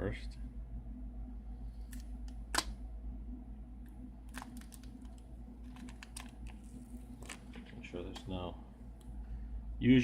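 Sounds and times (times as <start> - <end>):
plastic film crinkling: 4.3 - 8.3.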